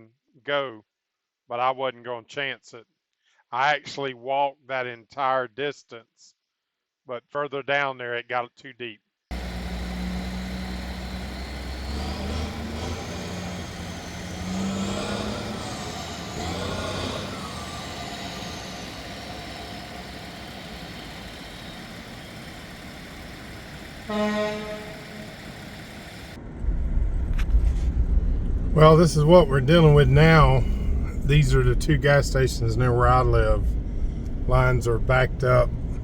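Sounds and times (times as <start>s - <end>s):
vehicle passing: 9.3s - 26.4s
car horn toot: 24.1s - 25.3s
loud low rumble: 24.7s - 36.0s.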